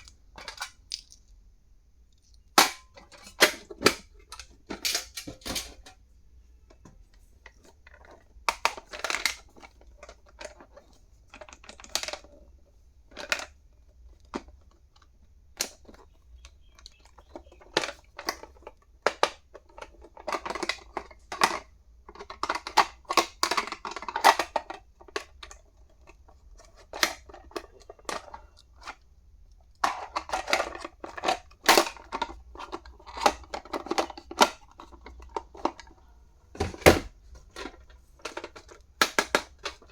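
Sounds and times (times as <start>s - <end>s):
rustling and scraping: 29.7s - 39.9s.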